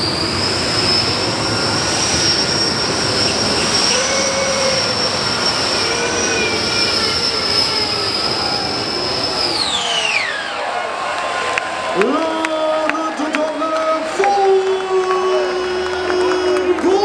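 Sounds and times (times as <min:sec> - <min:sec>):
tractor engine at full power: 0:00.0 - 0:11.1
high steady whine: 0:00.0 - 0:12.5.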